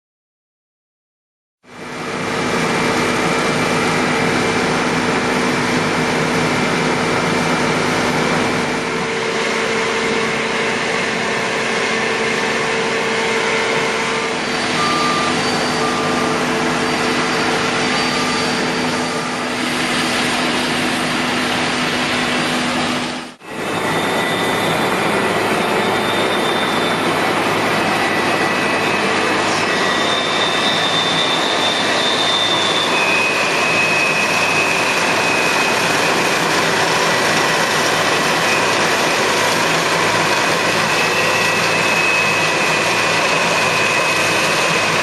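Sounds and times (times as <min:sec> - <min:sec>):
combine harvester running: 0:01.7 - 0:45.0
short high beeps: 0:14.2 - 0:19.7.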